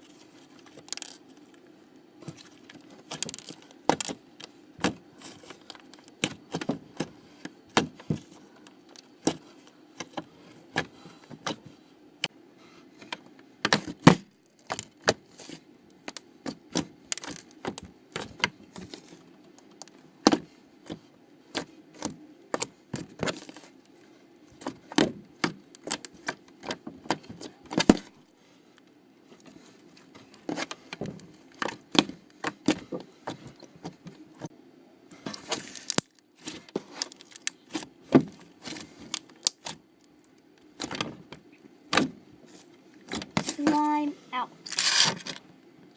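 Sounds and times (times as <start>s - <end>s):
slime squishing with sticky pops: 24.4s - 28.1s, 35.2s - 42.2s.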